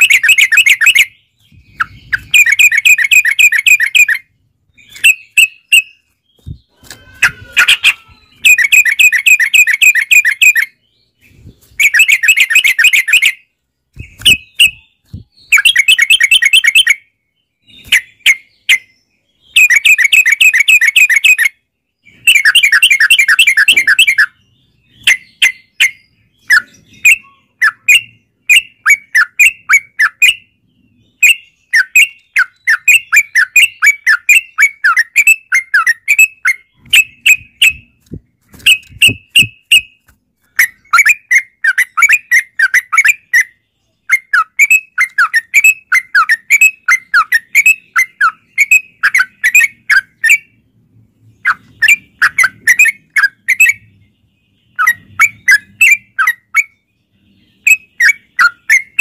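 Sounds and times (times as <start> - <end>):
bird bubbly chattering song: 0.0 - 17.0, 17.7 - 38.0
short clipped bird calls: 0.0 - 50.6.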